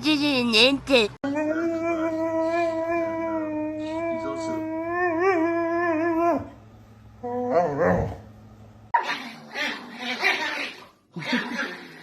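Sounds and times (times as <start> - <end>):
dog howling: 1.2 - 6.6, 7.2 - 8.3.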